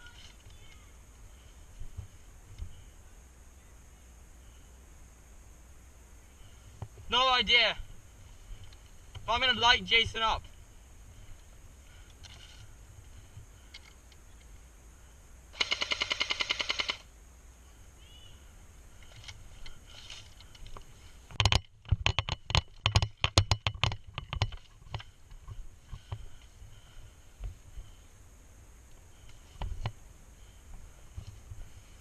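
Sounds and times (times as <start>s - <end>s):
airsoft rifle rapid firing: 15.6s - 17.1s
loud irregular cracks and knocks: 21.4s - 25.1s.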